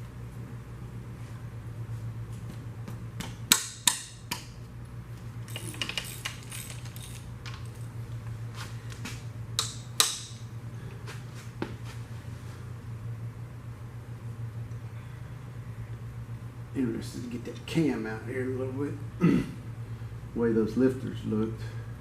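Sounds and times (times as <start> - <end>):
metal tools clinking: 5.4 - 7.9.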